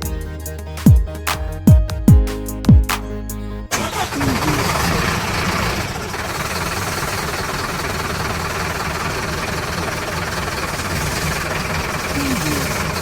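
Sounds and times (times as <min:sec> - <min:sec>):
cartoon vehicle engine running: 0:03.1 - 0:13.0.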